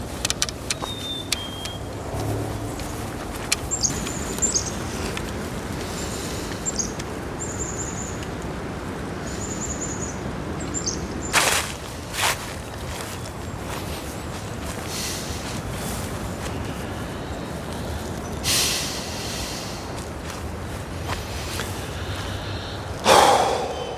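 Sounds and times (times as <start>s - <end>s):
small bird chirping: 0.0s - 5.3s, 5.9s - 8.2s, 9.2s - 11.4s
outdoor background noise: 0.0s - 23.9s.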